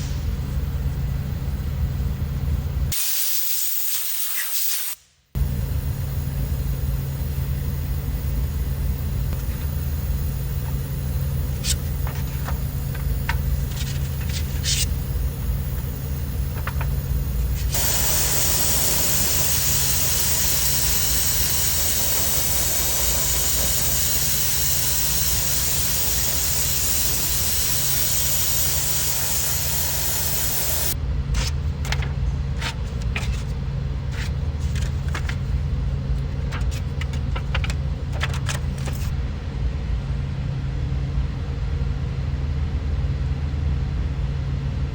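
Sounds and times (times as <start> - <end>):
steady low hum: 0.0 - 3.0, 5.4 - 44.9
spray hiss: 2.9 - 5.0, 17.6 - 31.0.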